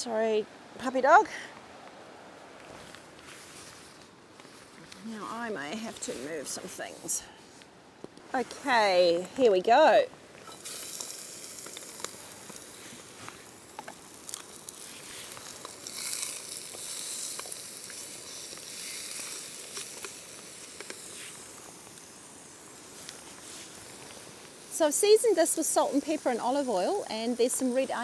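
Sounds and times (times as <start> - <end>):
meat and onion sizzling in a pan: 10.5 - 28.0.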